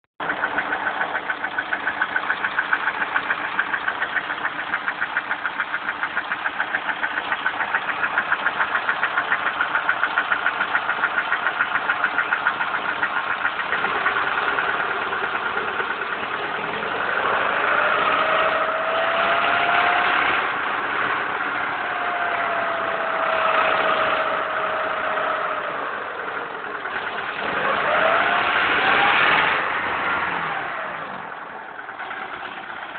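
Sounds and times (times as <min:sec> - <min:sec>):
rhythmic metallic engine knock: 0:00.2 - 0:28.5, 0:29.7 - 0:32.9
car engine revving: 0:07.2 - 0:32.9.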